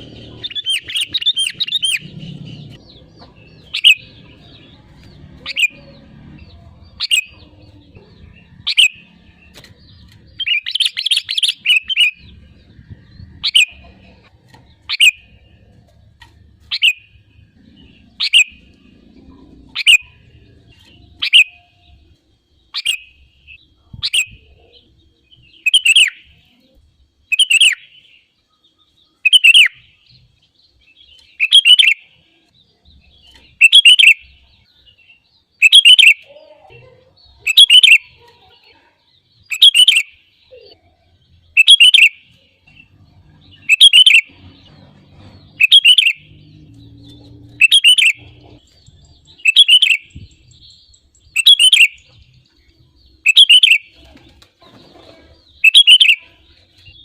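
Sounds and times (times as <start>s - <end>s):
bulbul singing: 0.0s - 57.0s.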